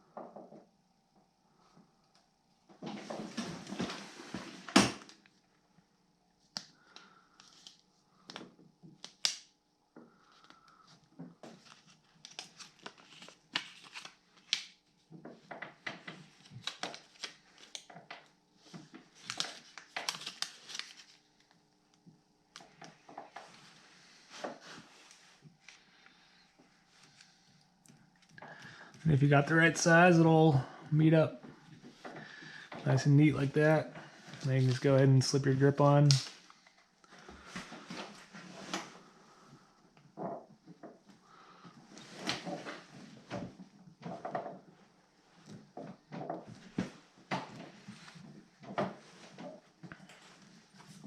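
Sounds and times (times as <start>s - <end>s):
backing paper crinkling and tearing: 11.5s - 14.8s, 16.0s - 17.9s, 18.8s - 21.6s.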